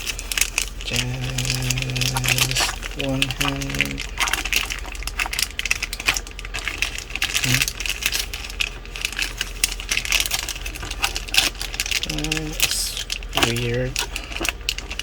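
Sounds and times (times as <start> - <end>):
plastic packaging crinkling: 0.0 - 15.0.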